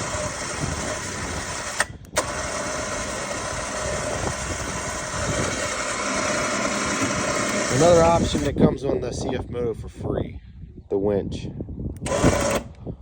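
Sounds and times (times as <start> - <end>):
engine running: 0.0 - 8.5.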